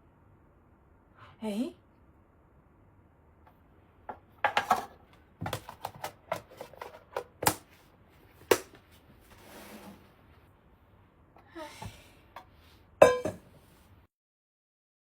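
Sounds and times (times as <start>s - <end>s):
hard objects tapping and knocking: 4.1s - 7.6s, 13.0s - 13.5s.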